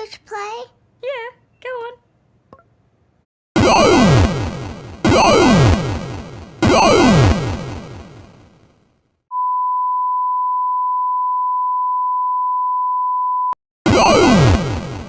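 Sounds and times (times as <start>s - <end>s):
clashing alarm sound effects: 3.6s - 8.4s, 13.9s - 15.0s.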